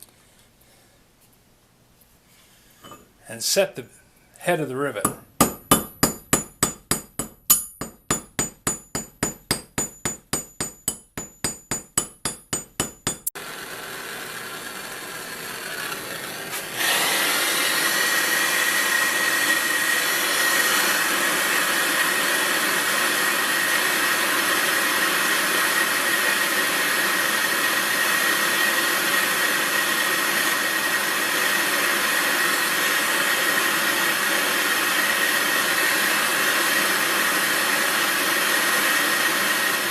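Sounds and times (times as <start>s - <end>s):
hammer tapping on steel rivet: 5.0s - 13.3s.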